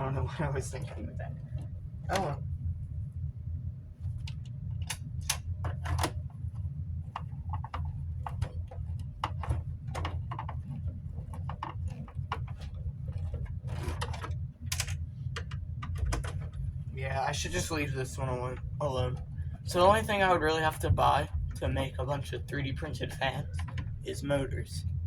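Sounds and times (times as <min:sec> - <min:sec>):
steady low hum: 0:00.0 - 0:25.0
plastic parts clicking: 0:07.2 - 0:16.6.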